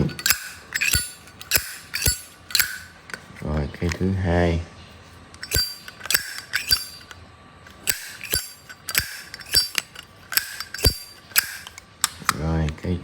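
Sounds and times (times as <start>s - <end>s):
lighter lid metallic clicks: 0.2s - 3.2s, 5.4s - 12.4s.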